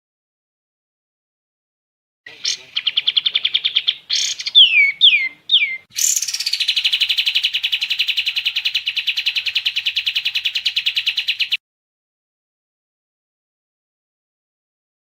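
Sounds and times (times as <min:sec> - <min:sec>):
bird singing whistled notes and trill: 0:02.3 - 0:11.6.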